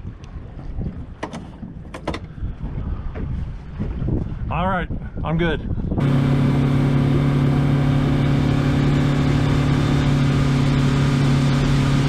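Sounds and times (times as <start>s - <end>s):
rushing wind: 0.0s - 12.0s
water noise: 0.0s - 12.0s
outboard motor running: 6.0s - 12.0s.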